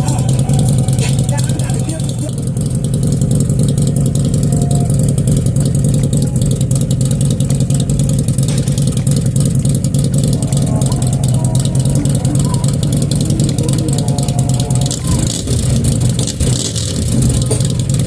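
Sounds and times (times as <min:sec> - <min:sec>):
motorcycle engine rumbling: 0:00.0 - 0:18.0.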